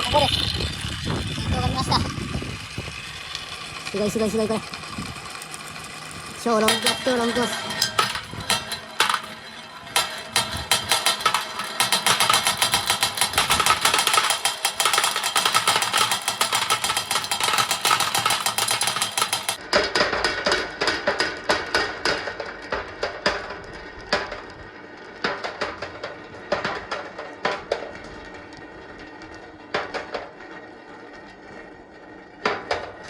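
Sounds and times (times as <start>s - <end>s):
balls clattering down wooden track: 0.0s - 24.5s.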